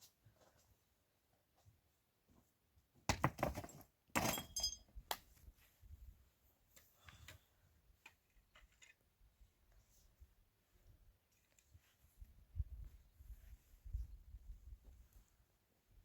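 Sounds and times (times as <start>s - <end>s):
hard objects clattering and clinking: 3.1s - 4.8s.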